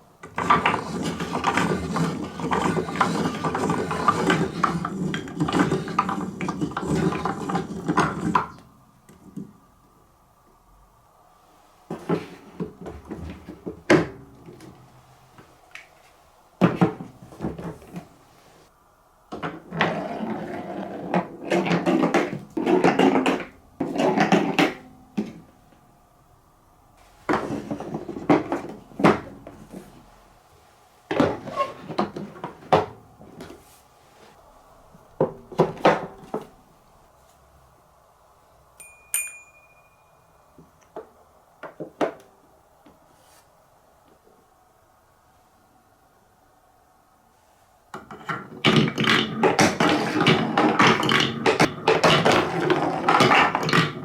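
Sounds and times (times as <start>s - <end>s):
high ringing tone: 38.8s - 40.8s.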